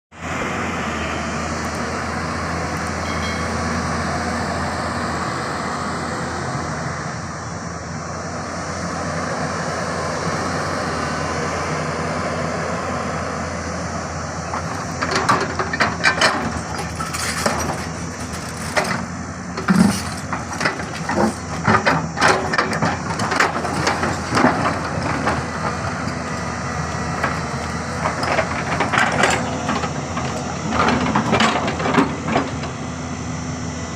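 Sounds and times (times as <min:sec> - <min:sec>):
excavator diesel engine running: 0:00.2 - 0:33.9
metallic clanks and knocks: 0:14.5 - 0:26.2, 0:27.1 - 0:32.8.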